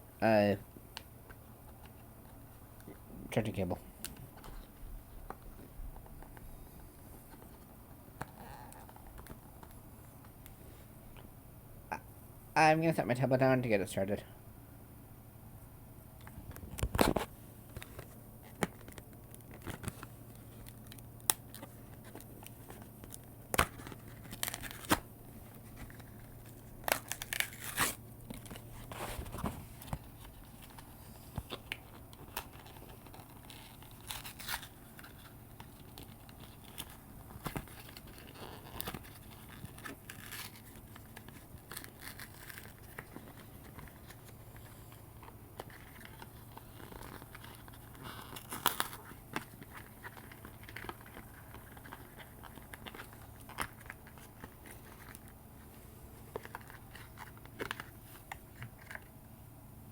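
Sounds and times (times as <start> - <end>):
packaging tearing and crinkling: 16.6 - 55.4, 56.2 - 59.1.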